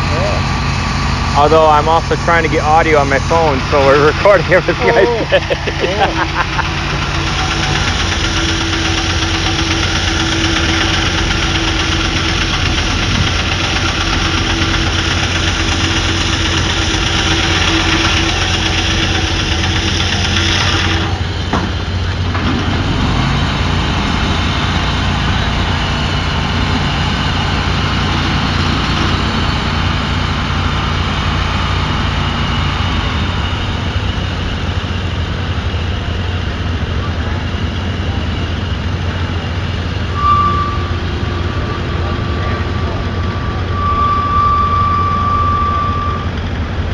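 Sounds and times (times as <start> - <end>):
higher steady tone: 0.0 - 19.8, 38.0 - 46.8
engine running steadily: 0.0 - 46.9.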